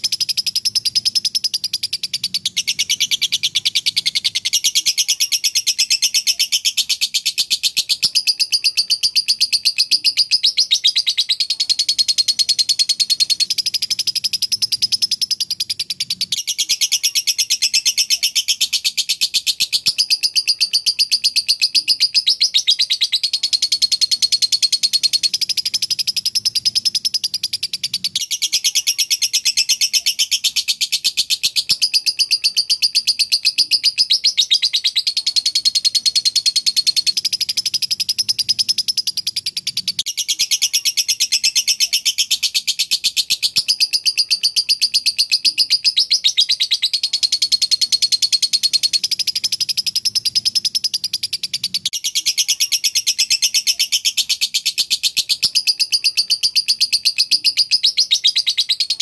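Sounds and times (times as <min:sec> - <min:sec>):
lovebird shrill chattering: 0:00.0 - 0:59.0.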